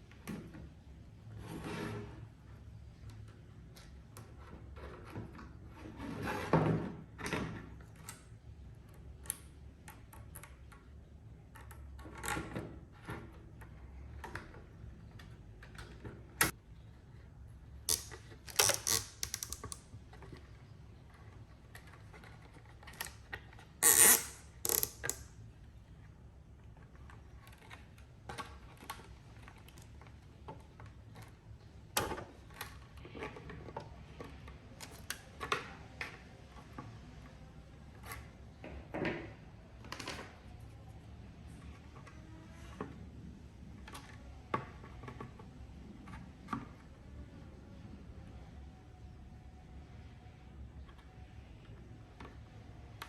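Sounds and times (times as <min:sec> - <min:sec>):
plastic parts clicking and rattling: 0:17.8 - 0:25.4.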